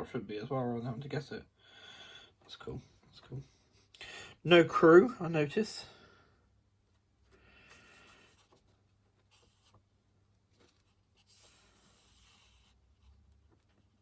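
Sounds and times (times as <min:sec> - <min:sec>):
paper pages rustling: 0:10.4 - 0:11.9.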